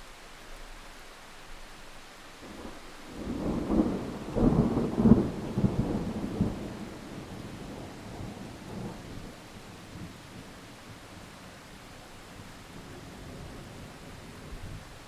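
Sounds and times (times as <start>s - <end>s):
rain hiss: 0.0s - 15.0s
thunder rumbling: 2.4s - 11.3s.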